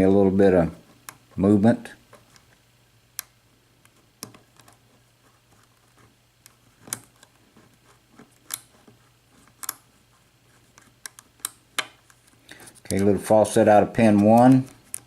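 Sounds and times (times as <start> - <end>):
lock pick clicking and scraping: 6.4 - 7.4, 8.2 - 8.8, 9.4 - 9.9.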